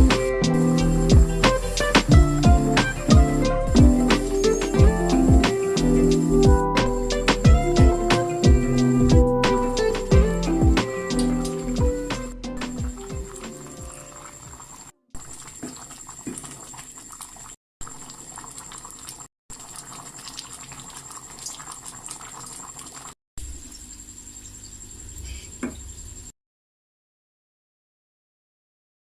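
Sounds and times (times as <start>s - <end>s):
liquid bubbling in a pot: 14.1s - 24.7s.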